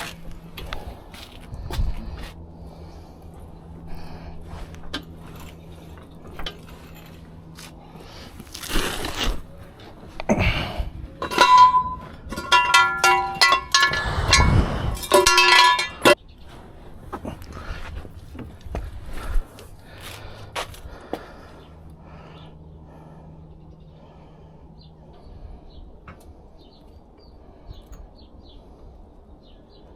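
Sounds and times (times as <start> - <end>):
scraping rustling noises: 4.4 - 10.2
metal objects clinking and rattling: 11.2 - 16.2.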